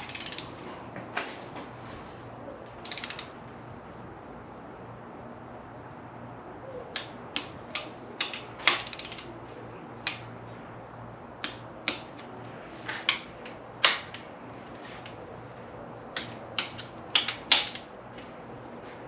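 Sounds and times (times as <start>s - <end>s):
torque wrench clicking: 0.0s - 0.5s, 2.8s - 3.3s, 7.0s - 9.3s, 16.2s - 17.9s
ratchet clicks: 0.0s - 0.6s, 2.8s - 3.3s, 7.0s - 9.4s, 16.2s - 17.9s.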